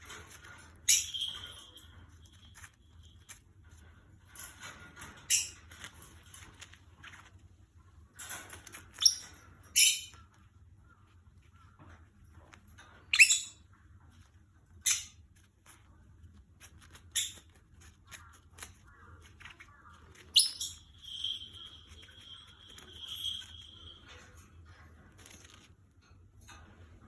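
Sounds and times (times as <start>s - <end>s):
lovebird chirps: 13.1s - 13.6s, 20.1s - 24.1s.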